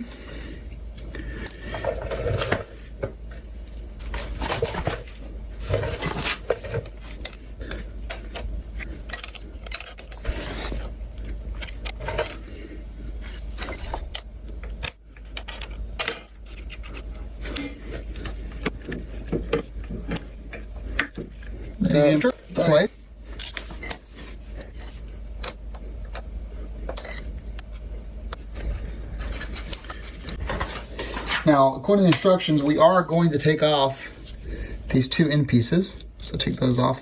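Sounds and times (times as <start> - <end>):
steady low hum: 0.0 - 37.0
metal tools clinking and rattling: 4.1 - 10.9, 11.5 - 12.5, 13.3 - 14.2, 14.8 - 26.2, 26.9 - 27.6, 28.4 - 31.4.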